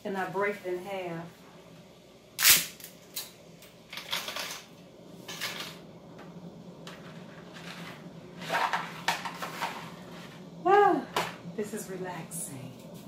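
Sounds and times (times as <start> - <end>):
faint steady hum: 0.0 - 13.0
dry pasta rattling in pot: 8.4 - 10.0.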